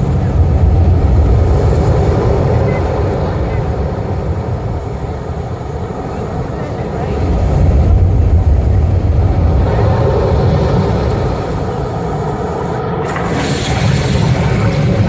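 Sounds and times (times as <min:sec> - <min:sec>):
loud low engine rumble: 0:00.0 - 0:03.8.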